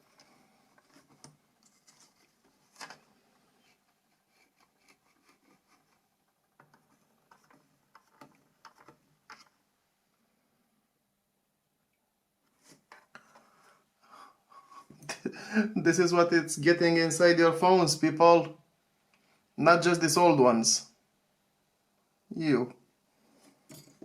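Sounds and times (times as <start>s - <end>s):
small parts clicking and scratching: 0.0s - 9.7s.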